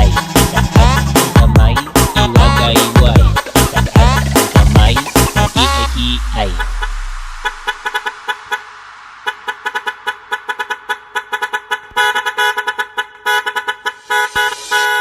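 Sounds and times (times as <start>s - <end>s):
truck horn short toots: 9.5s - 15.0s.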